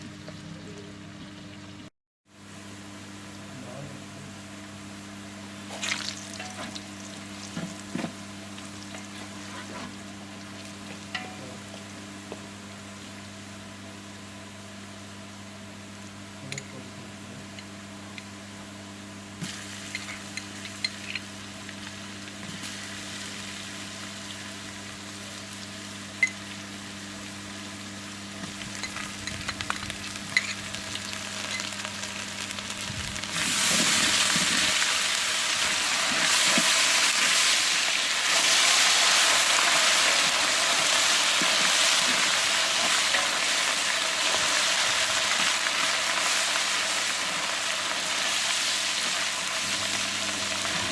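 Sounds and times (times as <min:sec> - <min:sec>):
food sizzling in hot oil: 0:04.8 - 0:12.0, 0:17.8 - 0:50.9.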